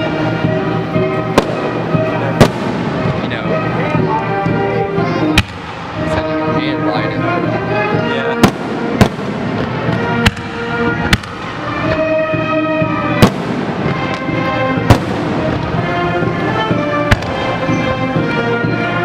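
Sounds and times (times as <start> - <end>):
fireworks bursting: 0.0 - 4.0, 5.3 - 6.8, 8.2 - 18.4
music playing: 0.0 - 19.0.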